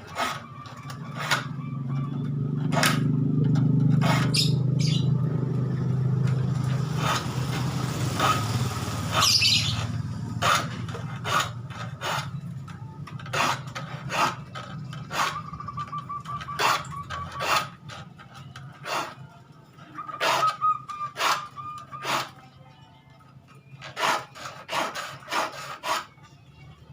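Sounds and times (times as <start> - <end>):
file rasping on saw teeth: 4.0 - 4.5, 10.4 - 12.3, 13.3 - 15.4, 18.8 - 19.2, 23.9 - 26.1.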